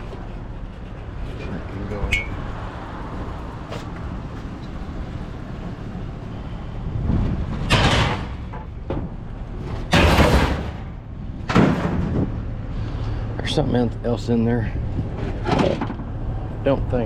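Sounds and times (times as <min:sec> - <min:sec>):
metal dumpster door scraping: 0:07.2 - 0:12.4, 0:15.1 - 0:16.2.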